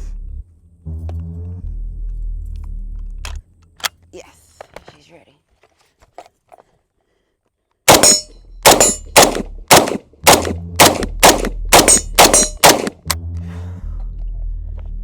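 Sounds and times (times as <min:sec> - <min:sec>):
rifle firing rapid shots: 0:07.9 - 0:13.1.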